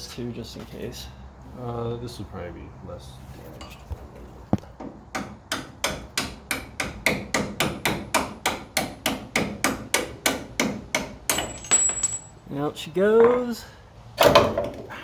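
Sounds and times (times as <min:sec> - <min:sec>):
hammering on metal: 0:04.8 - 0:12.3.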